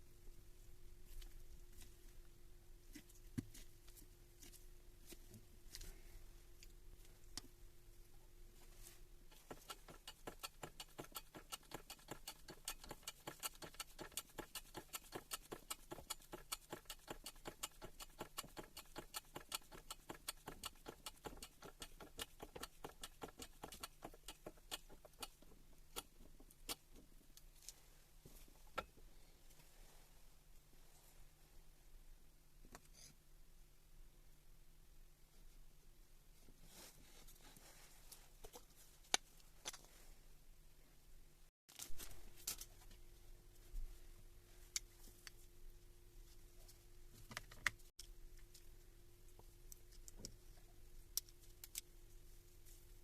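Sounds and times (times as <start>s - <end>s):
faint steady hum: 0.0s - 53.0s.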